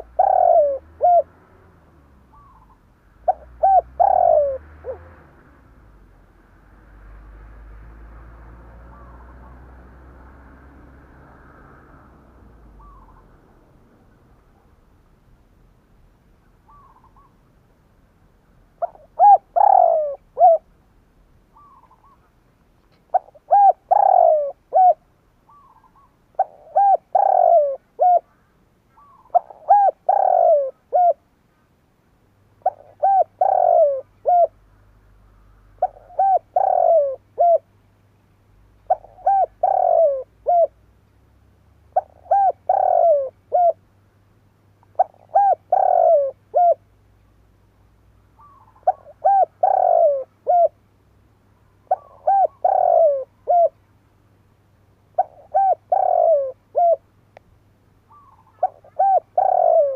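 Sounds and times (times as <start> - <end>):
dove cooing: 0.0 - 5.7, 8.7 - 9.7, 12.6 - 13.4, 16.7 - 17.4, 18.8 - 20.7, 21.5 - 22.3, 22.9 - 31.2, 32.6 - 34.6, 35.4 - 37.7, 38.8 - 40.8, 41.9 - 43.8, 44.8 - 46.9, 48.4 - 50.8, 51.7 - 53.8, 55.1 - 57.1, 58.1 - 59.9.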